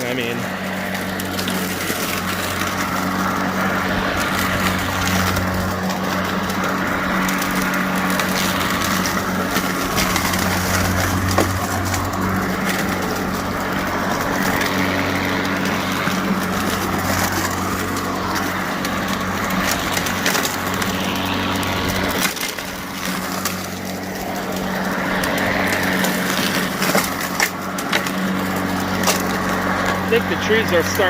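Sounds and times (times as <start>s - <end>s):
blade chopping dry leaves: 0.0s - 31.0s
electric mower motor hum: 0.0s - 31.0s.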